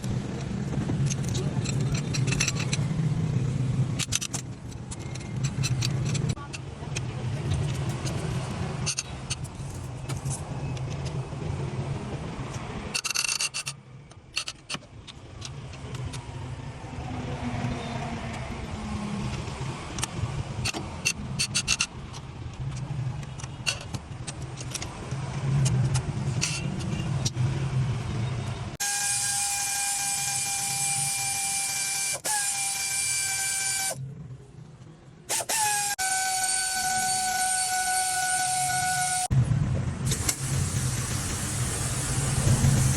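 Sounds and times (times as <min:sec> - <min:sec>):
car engine cranking: 0:00.0 - 0:11.2, 0:40.1 - 0:42.9.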